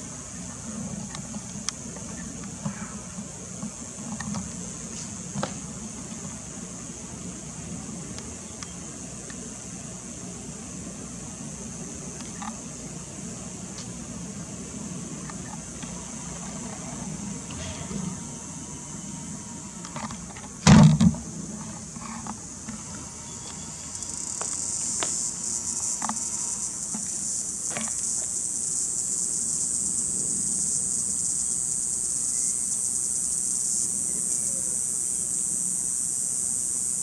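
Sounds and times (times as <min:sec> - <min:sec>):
cicadas buzzing: 0:00.0 - 0:37.0
loud short thump: 0:20.6 - 0:21.2.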